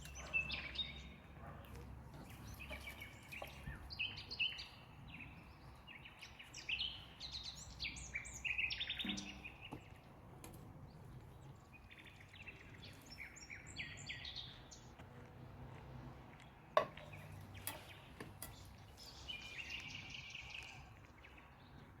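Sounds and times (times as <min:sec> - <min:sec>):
small birds chirping: 0:00.0 - 0:15.3, 0:16.3 - 0:22.0.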